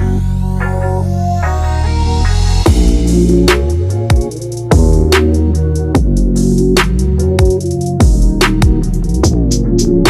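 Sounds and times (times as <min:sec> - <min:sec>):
electronic music with heavy bass: 0:00.0 - 0:10.0.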